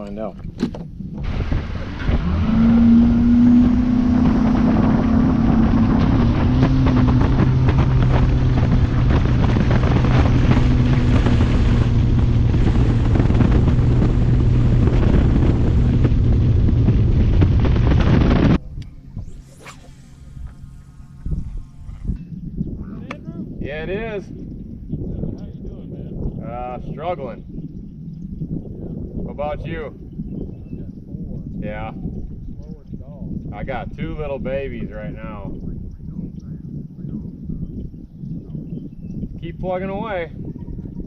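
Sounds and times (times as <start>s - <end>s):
wind buffeting microphone: 0.0s - 41.0s
outboard motor running: 0.4s - 23.2s.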